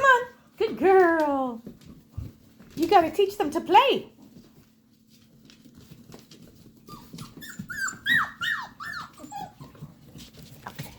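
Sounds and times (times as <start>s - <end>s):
faint scuffling: 0.9s - 10.9s
puppies whimpering: 6.7s - 10.2s.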